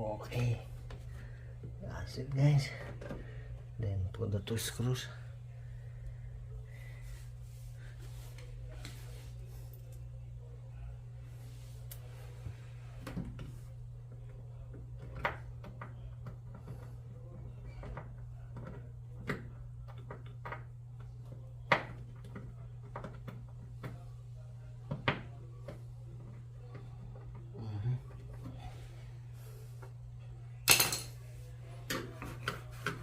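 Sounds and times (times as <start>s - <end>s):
steady low hum: 0.0s - 33.0s
tools and parts clicking and knocking: 30.7s - 31.2s.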